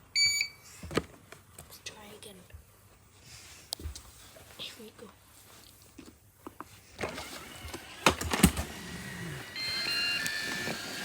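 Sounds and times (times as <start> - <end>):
robot vacuum running hum: 7.0 - 11.0.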